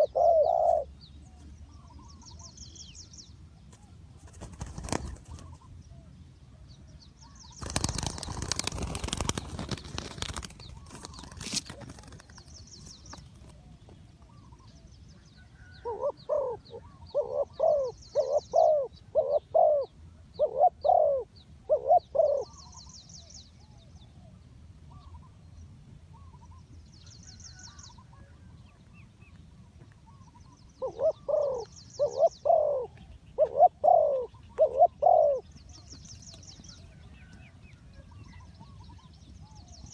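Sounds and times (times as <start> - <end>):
dove cooing: 0.0 - 2.4, 15.4 - 22.8, 30.1 - 35.5
small birds chirping: 7.0 - 24.2, 24.9 - 39.9
rustling noise: 8.5 - 14.1.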